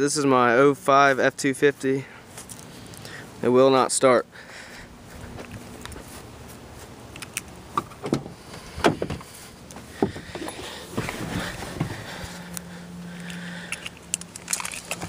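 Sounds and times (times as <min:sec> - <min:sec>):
steady low hum: 0:00.0 - 0:15.0
truck door clunking: 0:07.7 - 0:12.4.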